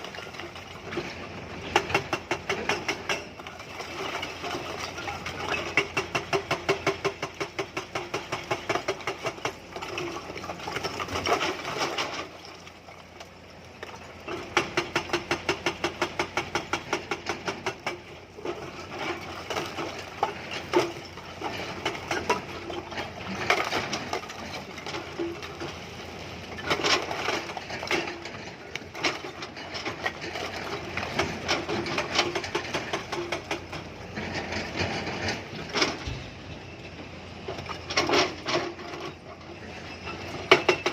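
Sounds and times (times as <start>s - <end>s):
hydraulic rock breaker hammering stone: 0.0s - 12.5s, 14.3s - 25.8s, 26.4s - 36.4s, 37.6s - 40.9s.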